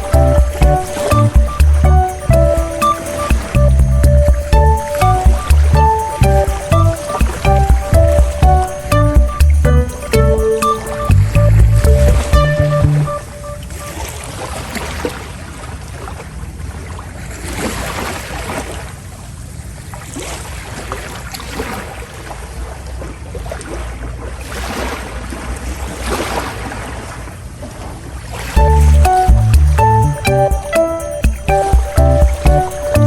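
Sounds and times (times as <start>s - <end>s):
water splashing along hull: 0.0s - 33.0s
ship's low rumble: 11.1s - 13.8s.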